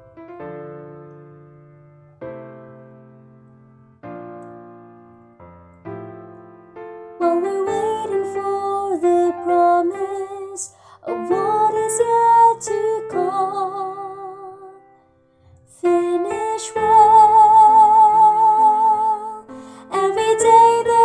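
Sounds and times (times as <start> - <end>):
piano accompaniment: 0.0 - 21.0
woman singing with vibrato: 7.2 - 14.8, 15.7 - 21.0.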